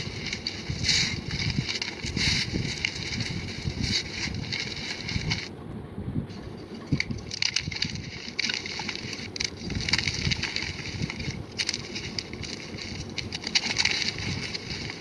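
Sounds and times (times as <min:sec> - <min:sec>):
chalk crumbling crackles: 0:00.0 - 0:05.5, 0:06.9 - 0:15.0.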